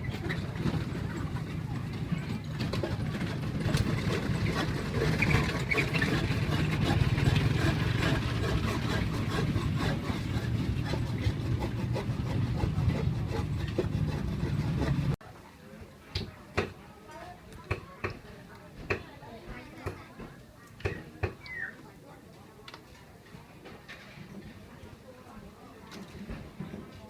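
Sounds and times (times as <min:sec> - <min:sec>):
engine rumbling: 0:00.0 - 0:15.2.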